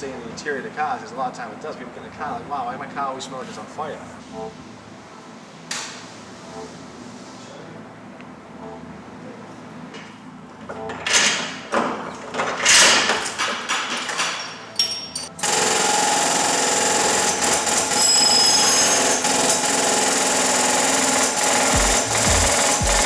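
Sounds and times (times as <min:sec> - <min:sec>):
handling and knocking noises: 0:10.7 - 0:15.3
power tool rattling buzz: 0:15.4 - 0:23.0.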